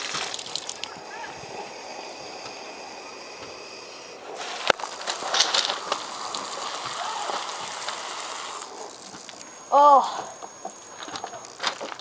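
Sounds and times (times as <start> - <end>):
water balloon popping: 0.0 - 0.9, 4.4 - 9.4
water spraying and splashing: 0.0 - 1.7, 4.3 - 9.3
tap water hissing: 0.0 - 9.6.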